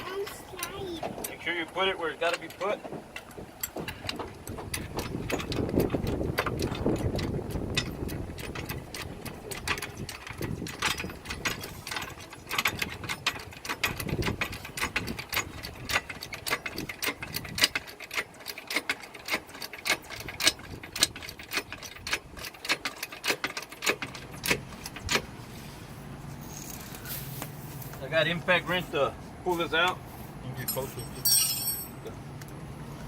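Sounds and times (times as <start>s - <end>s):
car jack metallic clicks: 12.5s - 25.3s.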